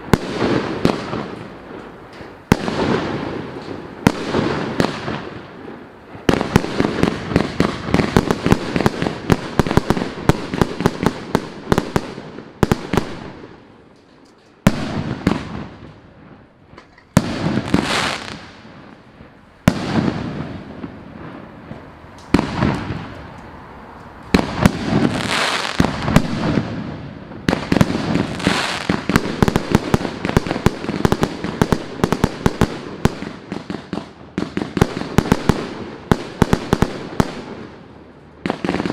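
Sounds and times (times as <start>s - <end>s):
firework cake firing volleys: 0.0s - 13.8s, 24.3s - 38.9s.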